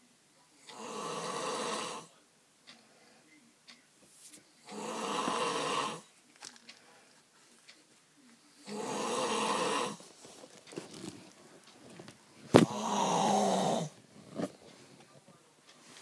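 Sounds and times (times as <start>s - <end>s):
man snoring loudly: 0.7s - 2.1s, 4.6s - 6.0s, 8.6s - 10.0s, 12.6s - 14.0s.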